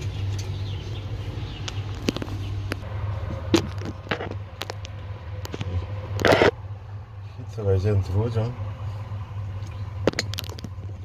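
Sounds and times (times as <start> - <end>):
steady low hum: 0.0 - 11.0
parts clicking and knocking: 1.6 - 6.6, 9.6 - 11.0.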